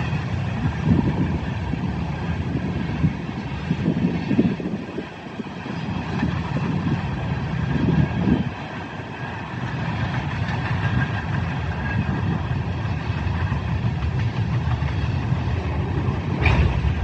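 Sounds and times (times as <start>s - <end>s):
train rumbling past: 0.0s - 17.0s.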